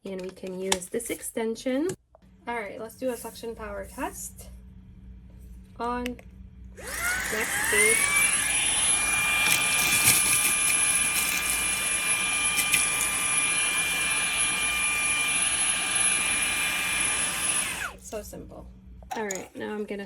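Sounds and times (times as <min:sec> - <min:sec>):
handheld vacuum whining: 0:06.8 - 0:18.2.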